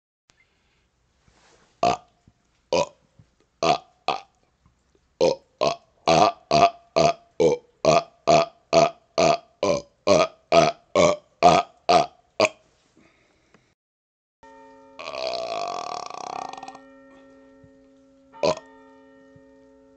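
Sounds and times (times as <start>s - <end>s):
man burping: 1.8s - 2.0s, 2.7s - 3.0s, 3.6s - 4.3s, 5.2s - 12.6s, 15.0s - 16.8s, 18.4s - 18.7s.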